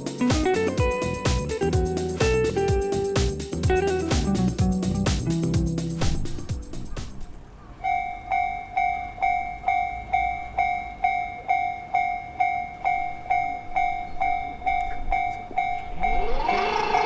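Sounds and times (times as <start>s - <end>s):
level crossing warning bell: 7.8s - 17.0s
rising whine: 15.8s - 17.0s.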